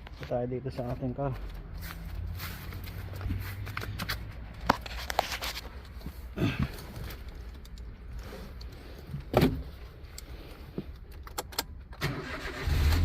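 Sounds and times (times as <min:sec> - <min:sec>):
key clicks and knocks at ignition: 0:10.9 - 0:11.8.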